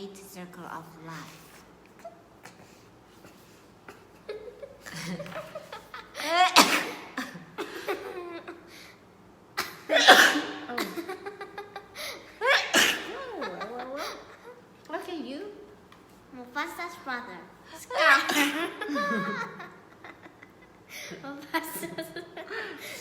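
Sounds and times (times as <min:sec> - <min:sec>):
person laughing: 0:03.9 - 0:06.6, 0:18.0 - 0:20.8
person sneezing loudly: 0:06.2 - 0:07.4, 0:09.9 - 0:10.8, 0:12.4 - 0:13.2, 0:18.0 - 0:18.8.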